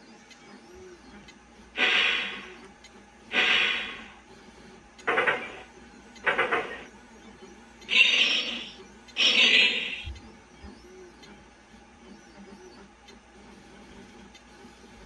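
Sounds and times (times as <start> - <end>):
speaker hissing bursts: 1.8 - 2.4, 3.3 - 4.1.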